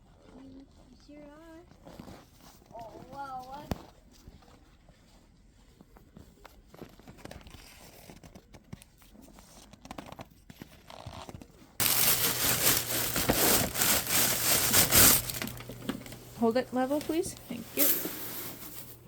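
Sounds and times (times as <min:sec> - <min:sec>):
loud crinkling crunching rustle: 0:11.8 - 0:16.3
faint crackles: 0:11.8 - 0:19.0.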